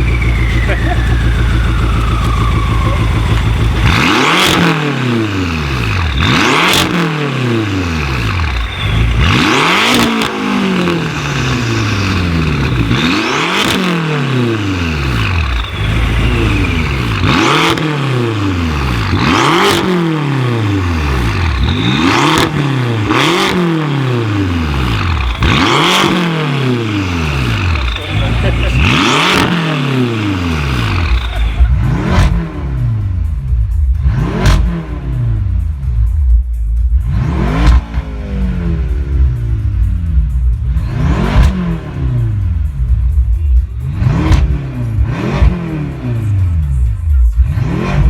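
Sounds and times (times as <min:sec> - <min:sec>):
car engine revving: 0:00.0 - 0:48.0.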